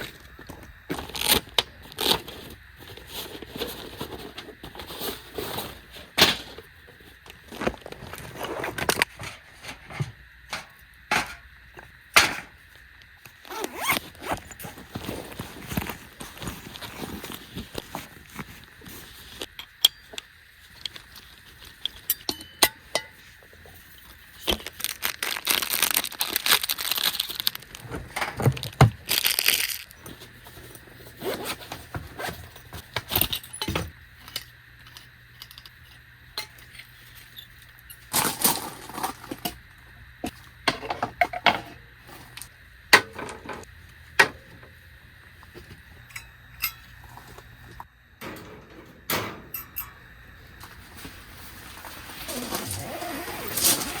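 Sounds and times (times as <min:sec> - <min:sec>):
gear clinking and scraping: 0:07.5 - 0:11.5, 0:46.1 - 0:54.0
rustling: 0:50.5 - 0:54.0.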